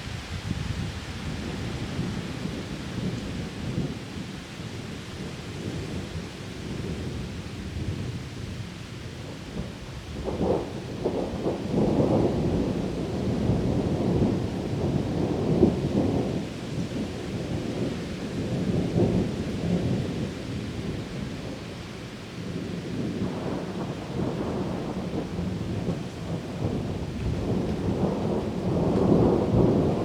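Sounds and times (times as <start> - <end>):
heavy rain: 0.0 - 30.0
thunder rumbling: 9.2 - 21.8, 22.4 - 30.0.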